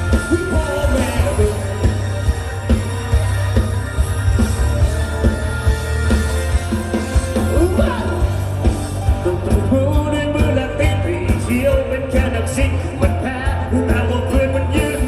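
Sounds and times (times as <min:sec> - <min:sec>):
person singing: 0:00.0 - 0:02.2, 0:07.3 - 0:15.0
live rock band playing: 0:00.0 - 0:15.0
steady drum beat: 0:00.0 - 0:15.0.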